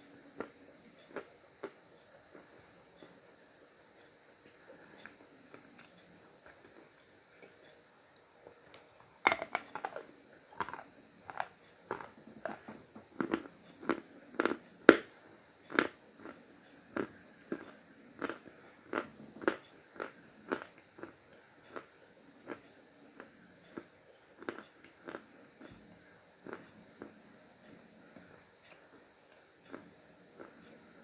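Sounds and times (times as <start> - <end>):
chalk being chewed: 10.6 - 14.6, 23.7 - 25.2.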